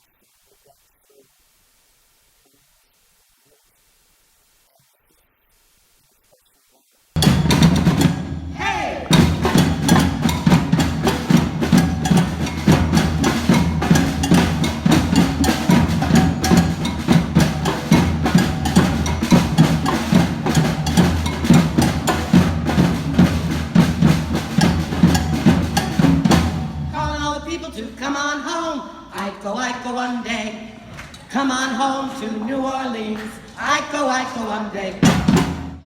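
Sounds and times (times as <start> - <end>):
drum band playing: 7.2 - 27.7, 35.0 - 35.8.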